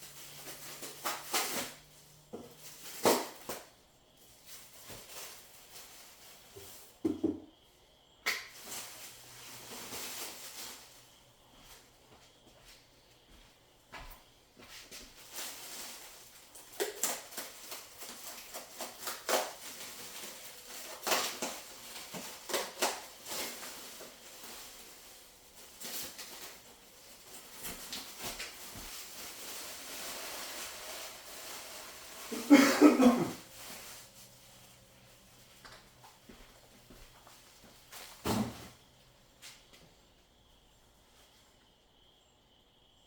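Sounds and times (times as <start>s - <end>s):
packaging rustling: 14.8s - 38.3s.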